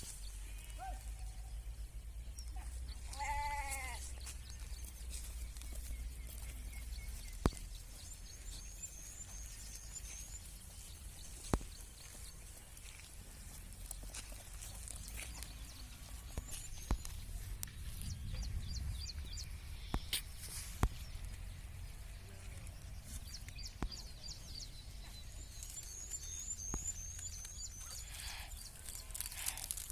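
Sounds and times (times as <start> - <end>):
sheep bleating: 3.0 - 4.1.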